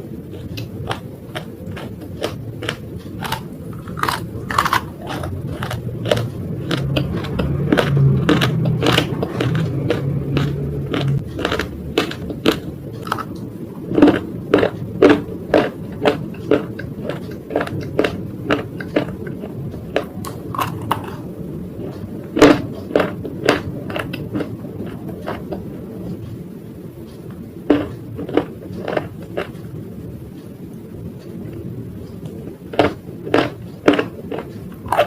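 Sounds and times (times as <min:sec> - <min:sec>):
low background hum: 0:00.0 - 0:35.0
crunching bites: 0:00.4 - 0:21.3, 0:32.7 - 0:35.0.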